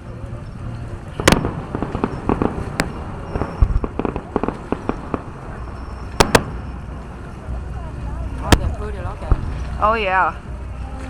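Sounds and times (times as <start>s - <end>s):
fireworks crackling pops: 1.1s - 7.0s, 8.4s - 9.8s
fireworks sharp bangs: 1.1s - 7.0s.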